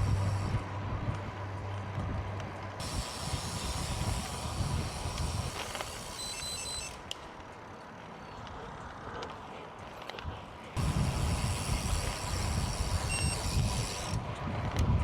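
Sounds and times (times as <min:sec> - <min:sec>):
road bike riding rumble and hiss: 0:00.0 - 0:15.0
short high electronic beeps: 0:06.2 - 0:07.0, 0:13.0 - 0:13.4.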